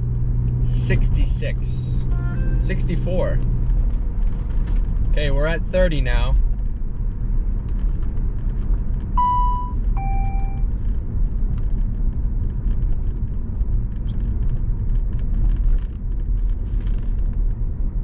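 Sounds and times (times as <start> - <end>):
car cabin road and engine rumble: 0.0 - 18.0
two-note electronic chime: 9.2 - 10.6.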